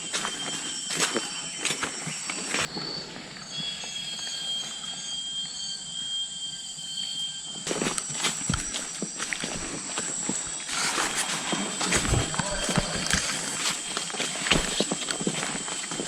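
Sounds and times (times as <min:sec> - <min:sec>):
insects droning: 0:00.0 - 0:16.0
faint chirps: 0:00.1 - 0:16.0
footsteps on trail: 0:07.6 - 0:16.0.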